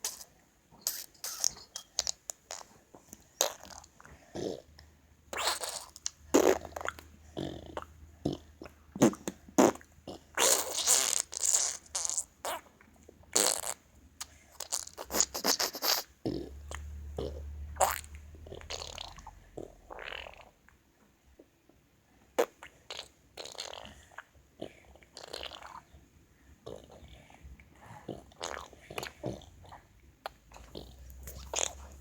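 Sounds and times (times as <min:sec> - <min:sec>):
boy making fart noises: 0:00.8 - 0:01.8, 0:03.4 - 0:04.6, 0:05.3 - 0:08.4, 0:09.0 - 0:12.7, 0:13.3 - 0:13.8, 0:14.6 - 0:16.5, 0:18.6 - 0:19.3, 0:22.4 - 0:24.0, 0:30.2 - 0:32.0.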